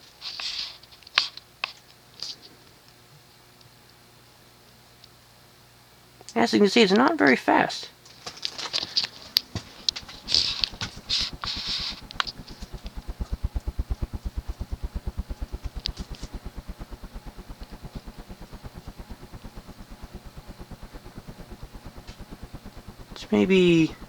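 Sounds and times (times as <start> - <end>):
ceiling fan pulsing air: 0.0 - 24.0
clicks and rustles: 8.0 - 13.8.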